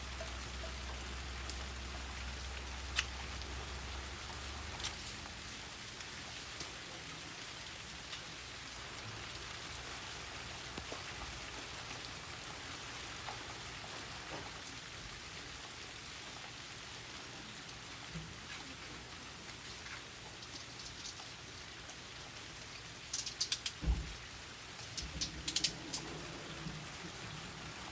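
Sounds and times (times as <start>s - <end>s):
raindrops ticking: 0.0s - 6.8s, 9.0s - 14.2s, 19.9s - 22.0s, 22.7s - 27.9s
steady rain falling: 0.0s - 27.9s.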